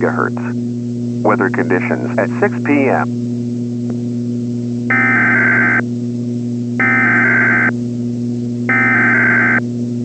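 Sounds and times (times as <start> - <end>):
low mains hum: 0.0 - 10.0
warbling data squeal: 4.9 - 5.8, 6.8 - 7.7, 8.7 - 9.6.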